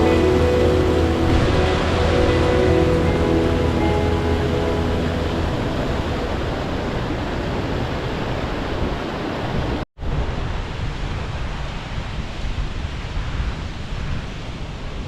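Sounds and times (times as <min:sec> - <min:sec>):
river rushing over waterfalls: 0:00.0 - 0:09.7.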